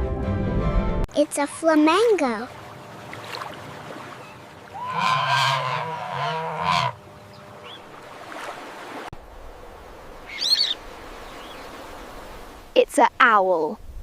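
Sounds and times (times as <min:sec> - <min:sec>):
flamingo honking call: 0:04.2 - 0:08.0.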